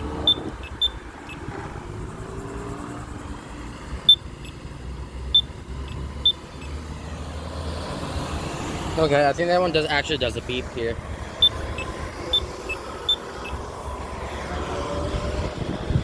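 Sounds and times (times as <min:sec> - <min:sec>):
road traffic rumble: 0:00.0 - 0:16.0
crosswalk button beeps: 0:00.2 - 0:01.4, 0:04.0 - 0:04.6, 0:05.3 - 0:06.8, 0:11.4 - 0:13.6.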